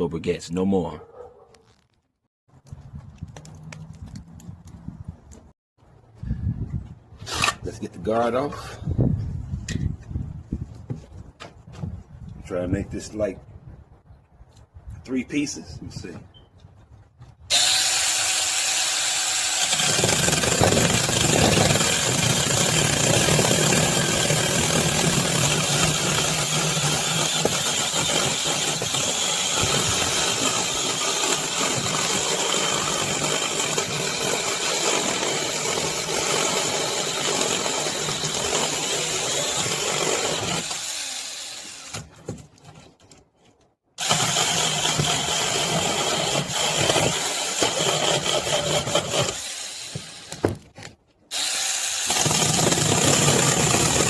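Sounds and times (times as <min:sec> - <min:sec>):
chainsaw cutting wood: 0:17.5 - 0:42.2, 0:44.0 - 0:50.7, 0:51.3 - 0:54.0.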